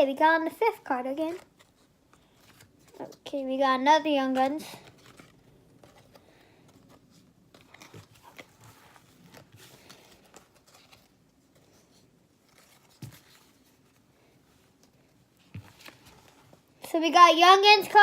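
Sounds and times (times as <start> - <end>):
trading cards rustling and clicking: 4.2 - 14.1, 14.7 - 16.7.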